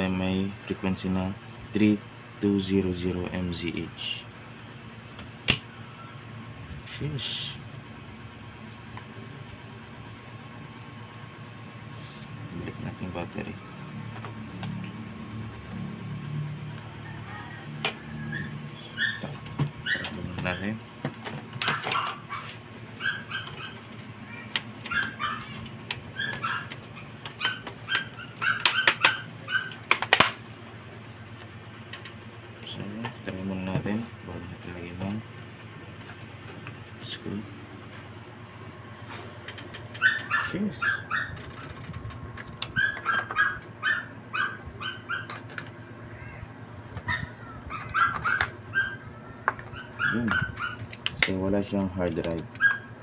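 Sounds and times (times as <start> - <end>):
dog whimpering and yipping: 18.2 - 20.1, 21.6 - 23.8, 24.9 - 29.8, 40.0 - 41.6, 42.8 - 45.5, 47.1 - 50.9, 52.6 - 53.0.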